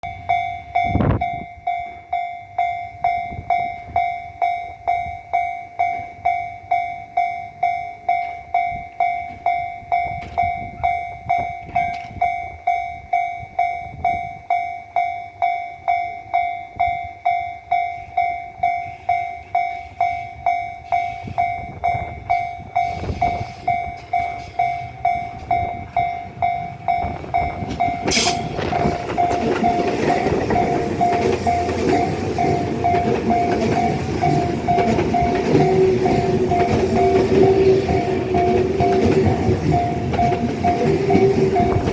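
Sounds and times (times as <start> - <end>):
electric train rumble: 0.0 - 41.9
level crossing bell ringing: 0.0 - 41.9.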